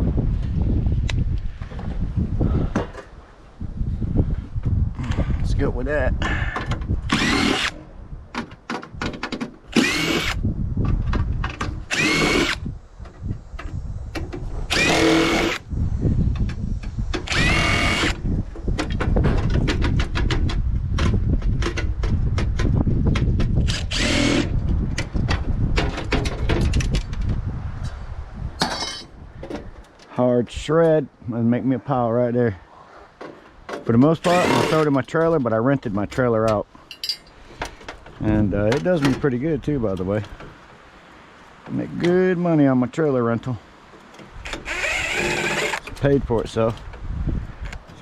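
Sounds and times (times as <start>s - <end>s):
power drill driving screws: 7.1s - 7.8s, 9.7s - 10.4s, 11.9s - 12.6s, 14.7s - 15.6s, 17.2s - 18.2s, 23.7s - 24.5s, 34.2s - 34.9s, 44.4s - 45.9s
metal knocking and rattling: 25.0s - 27.3s.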